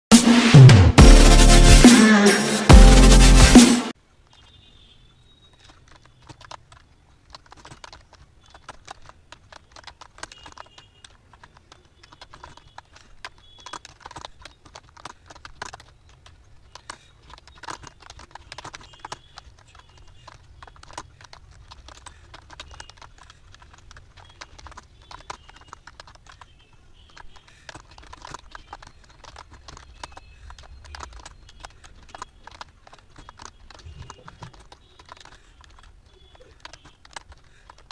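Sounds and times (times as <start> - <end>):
computer keyboard typing: 5.5 - 37.9.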